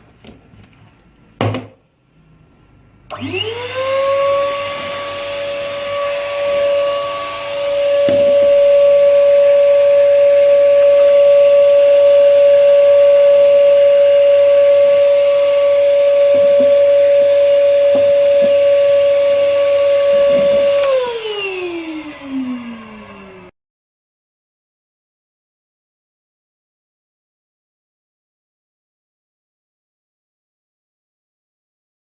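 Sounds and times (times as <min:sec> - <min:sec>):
vacuum motor whining: 0:03.1 - 0:23.5.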